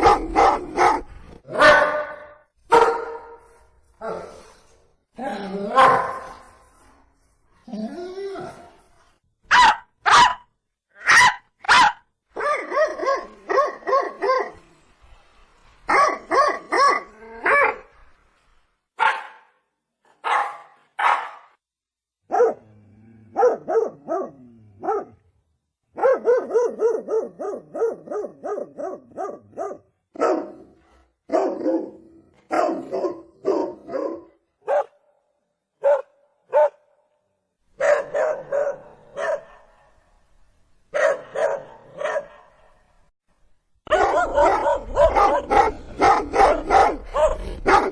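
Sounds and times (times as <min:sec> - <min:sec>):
dogs barking: 0:00.0 - 0:03.4, 0:09.5 - 0:10.4, 0:20.2 - 0:21.5, 0:22.3 - 0:22.6, 0:23.4 - 0:25.1, 0:26.0 - 0:30.6, 0:31.3 - 0:35.0, 0:35.8 - 0:36.8, 0:37.8 - 0:39.7, 0:41.0 - 0:42.6, 0:43.9 - 0:47.9.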